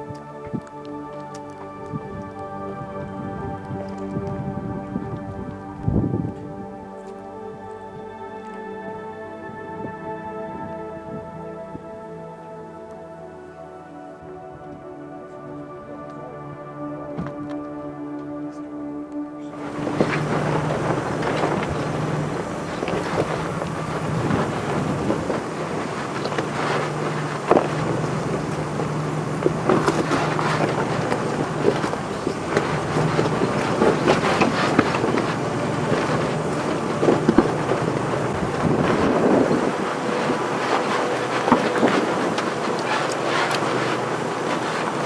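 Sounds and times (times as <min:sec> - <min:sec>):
vehicle engine hum: 0:19.6 - 0:45.0
vehicle rattling over rocks: 0:19.6 - 0:45.0.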